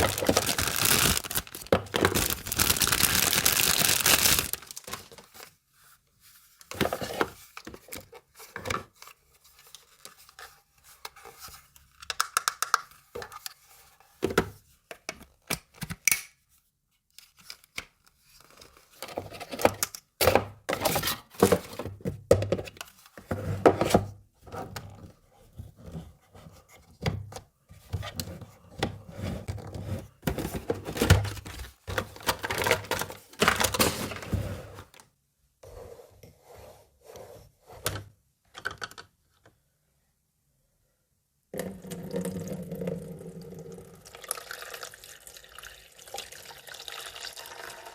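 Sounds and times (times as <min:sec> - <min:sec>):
packaging rustling and tearing: 0:00.0 - 0:05.6, 0:30.4 - 0:34.9
plastic parts clicking and knocking: 0:11.9 - 0:13.5, 0:30.2 - 0:34.3, 0:37.9 - 0:39.6.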